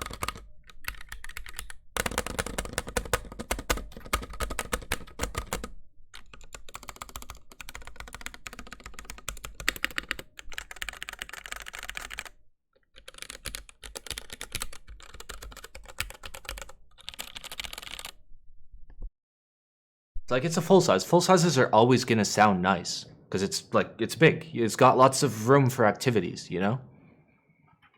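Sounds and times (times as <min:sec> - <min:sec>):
mechanical keyboard typing: 0:00.0 - 0:18.2.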